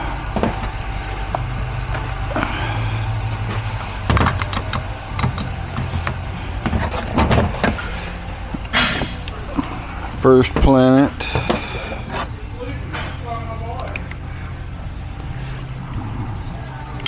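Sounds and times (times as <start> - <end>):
steady low hum: 0.0 - 17.0
metal parts clinking and knocking: 4.0 - 9.4, 13.8 - 14.2.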